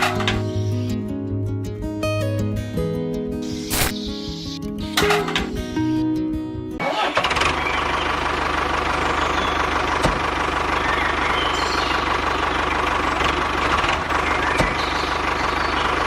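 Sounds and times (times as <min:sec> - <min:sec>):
short clicks: 0:03.6 - 0:04.6
engine idling: 0:06.8 - 0:16.0.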